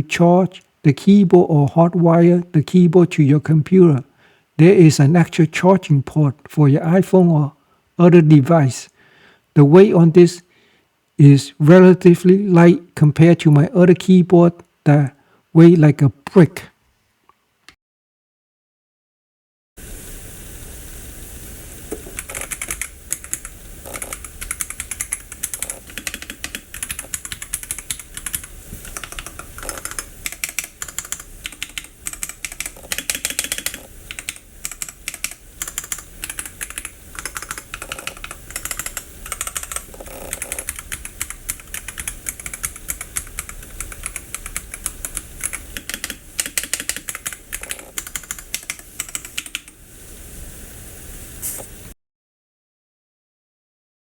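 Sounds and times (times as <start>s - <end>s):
fast mechanical keyboard typing: 22.1s - 49.8s.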